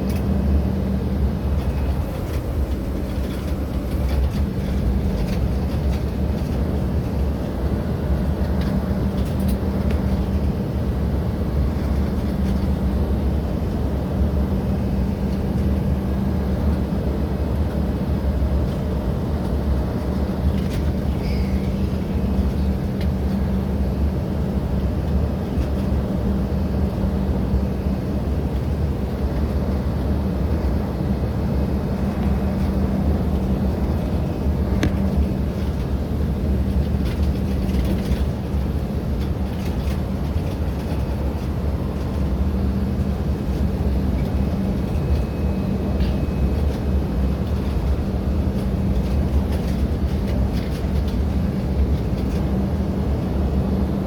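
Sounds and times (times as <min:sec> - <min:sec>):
constant low hum: 0:00.0 - 0:54.0
jet engines and airflow rumble: 0:00.0 - 0:54.0.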